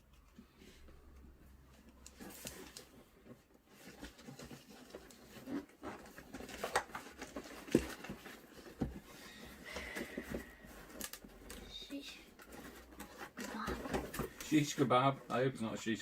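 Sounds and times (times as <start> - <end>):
toy packaging rustling: 1.8 - 16.0.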